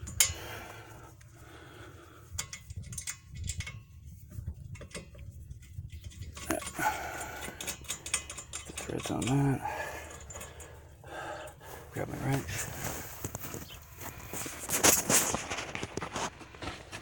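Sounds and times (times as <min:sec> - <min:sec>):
small metal clicks and clinks: 0:02.4 - 0:04.0, 0:04.7 - 0:10.8.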